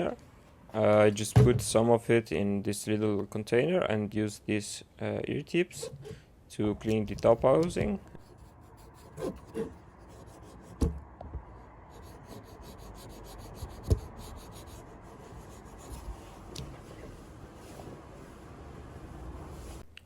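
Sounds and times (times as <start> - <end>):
cotton swabs scrubbing metal: 12.0 - 16.7.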